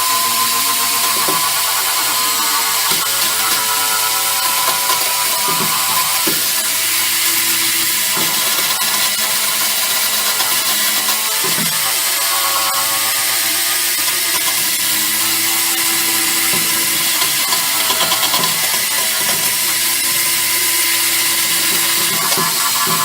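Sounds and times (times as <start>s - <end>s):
power tool abrading steel: 0.0s - 23.0s.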